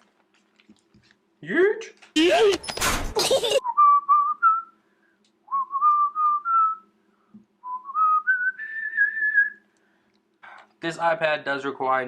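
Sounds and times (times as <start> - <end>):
person whistling a tune: 3.6 - 4.8, 5.5 - 6.9, 7.6 - 9.6.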